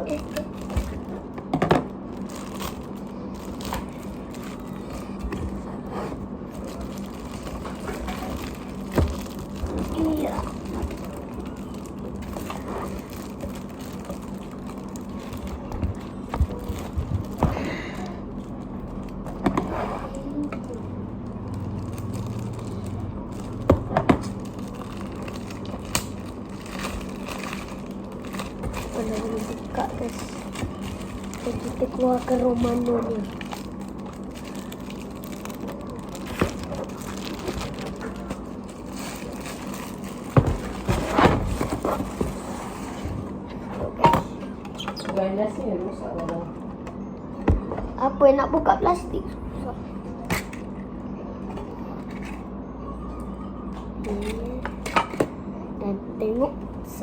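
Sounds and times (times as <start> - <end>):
packaging being handled and opened: 0.0 - 5.9, 6.5 - 19.4, 20.1 - 43.4.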